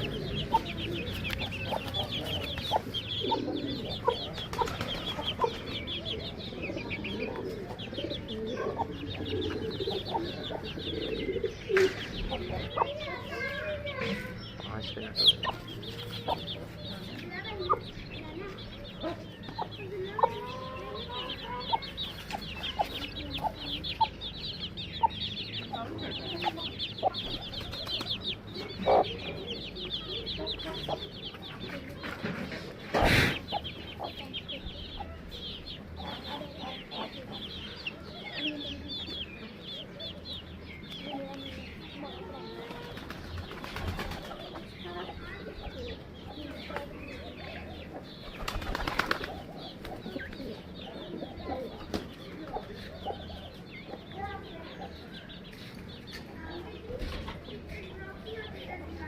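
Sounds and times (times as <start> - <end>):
chickens clucking: 0.0 - 59.0
small birds chirping: 0.0 - 59.0.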